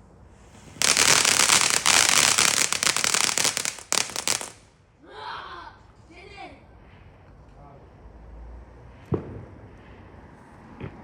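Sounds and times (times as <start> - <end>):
firework crackling: 0.0 - 4.7.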